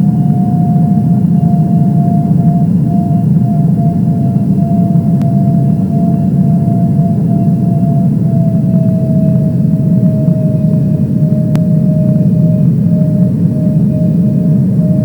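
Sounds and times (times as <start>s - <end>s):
jet engine drone and whine: 0.0s - 15.0s.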